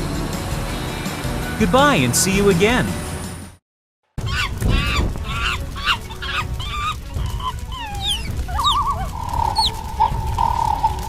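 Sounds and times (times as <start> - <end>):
birds chirping: 4.2 - 11.0.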